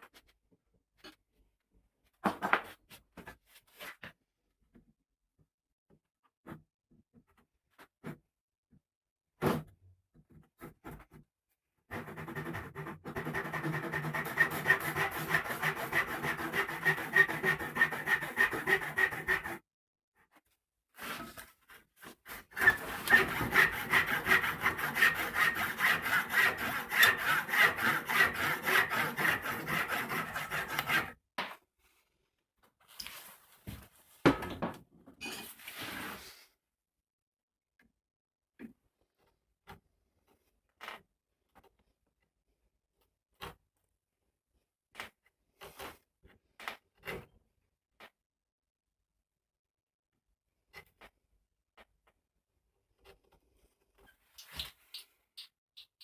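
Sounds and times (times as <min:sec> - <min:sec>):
hand saw cutting wood: 0:11.9 - 0:19.6, 0:22.3 - 0:31.2
short scrapes and knocks: 0:11.9 - 0:19.6, 0:21.0 - 0:31.2.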